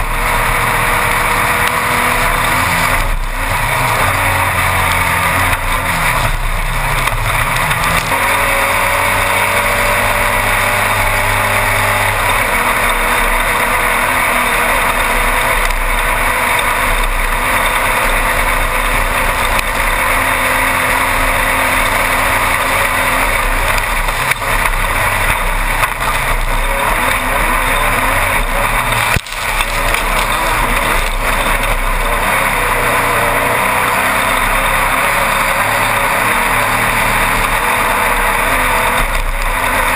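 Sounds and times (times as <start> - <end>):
race buggy engine running hard: 0.0 - 39.9
rough terrain noise: 0.0 - 39.9.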